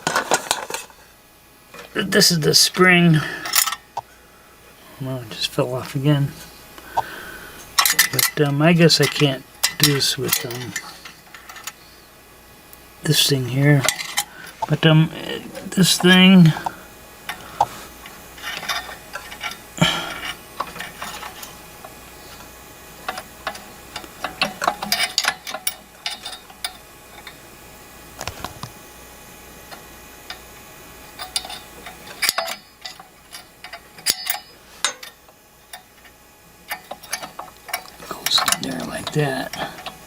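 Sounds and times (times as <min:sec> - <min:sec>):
small metal parts clicking: 0:03.4 - 0:03.8, 0:07.8 - 0:08.4, 0:09.0 - 0:11.8, 0:18.4 - 0:22.4, 0:23.0 - 0:27.4, 0:31.2 - 0:40.0.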